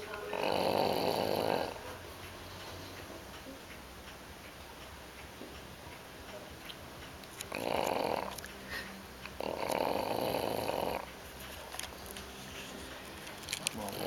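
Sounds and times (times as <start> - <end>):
puppy snoring: 0.3 - 1.8, 7.5 - 8.4, 9.4 - 11.1, 13.7 - 14.0.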